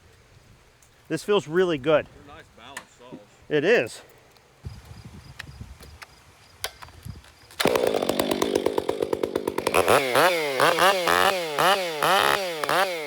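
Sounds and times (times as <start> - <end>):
chainsaw starting and revving: 7.6 - 13.0.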